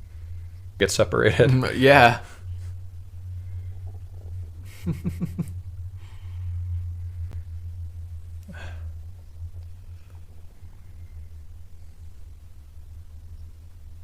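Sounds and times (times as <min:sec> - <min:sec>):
steady low hum: 0:00.0 - 0:14.0
stomach growling: 0:03.3 - 0:04.7.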